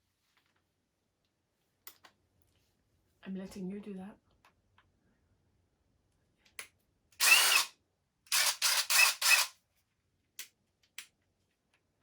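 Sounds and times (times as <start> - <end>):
drill motor bursts: 7.2 - 7.7, 8.3 - 9.5.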